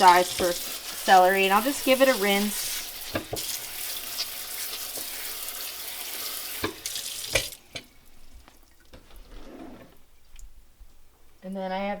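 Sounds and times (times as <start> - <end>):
tap water running onto celery: 0.0 - 9.0.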